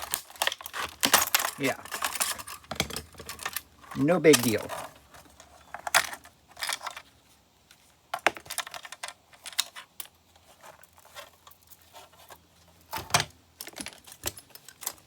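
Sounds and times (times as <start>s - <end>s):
metal parts and tools clinking: 0.0s - 7.0s, 12.8s - 15.0s.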